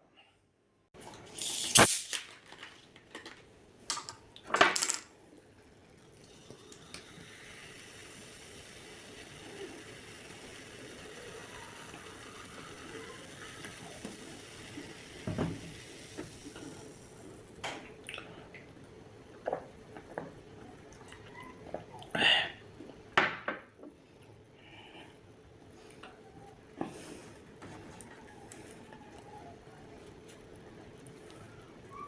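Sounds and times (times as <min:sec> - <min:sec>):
faint hiss: 0:01.2 - 0:02.4, 0:05.8 - 0:18.7.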